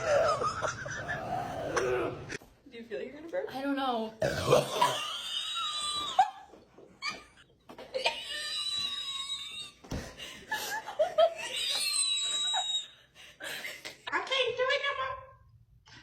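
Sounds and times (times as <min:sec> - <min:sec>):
high-pitched squealing laughter: 0:05.0 - 0:09.8, 0:11.2 - 0:13.0.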